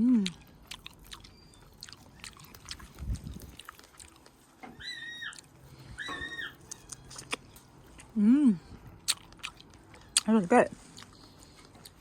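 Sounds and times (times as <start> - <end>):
parrot eating clicks and crunches: 0.3 - 5.6
parrot high calls: 4.7 - 7.1.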